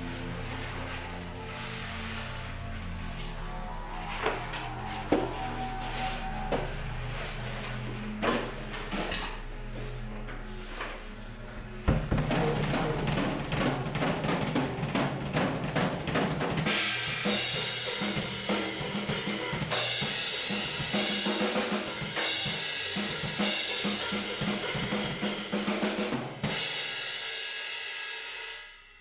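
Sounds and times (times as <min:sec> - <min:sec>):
final hit ringing out: 0:11.5 - 0:15.4
drum kit playing fast: 0:11.5 - 0:27.0.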